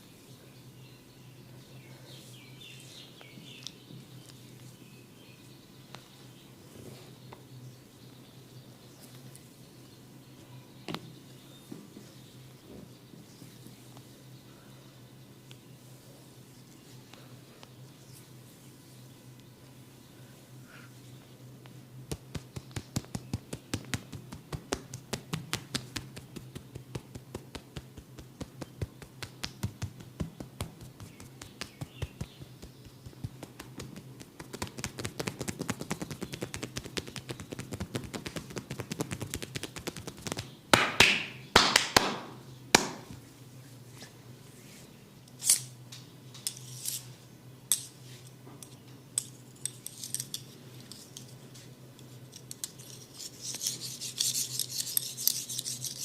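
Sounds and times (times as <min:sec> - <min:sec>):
light massage taps: 0:21.6 - 0:41.2.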